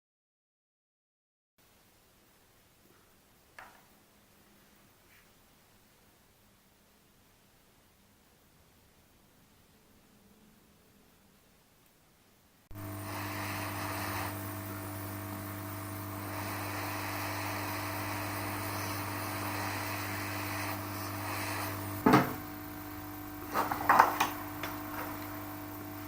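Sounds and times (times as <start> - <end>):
electrical hum with hiss: 1.6 - 26.0.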